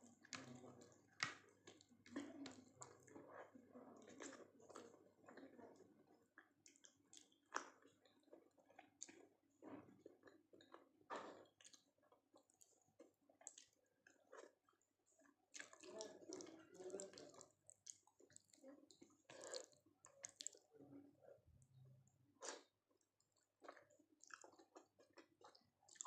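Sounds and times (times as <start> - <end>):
chewing soft food: 0.0 - 26.0.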